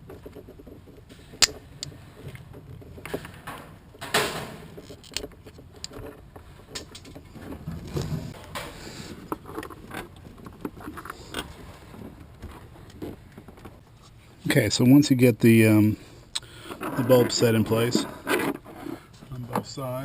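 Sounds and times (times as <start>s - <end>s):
plastic and metal parts clicking: 3.0s - 7.2s
scrape: 7.7s - 9.8s, 16.7s - 19.2s.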